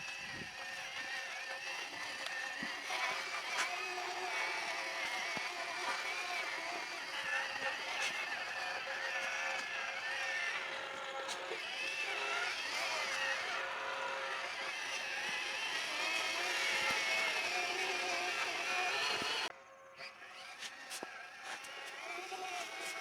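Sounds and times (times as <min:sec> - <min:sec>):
electric motor whine: 0:00.0 - 0:23.0.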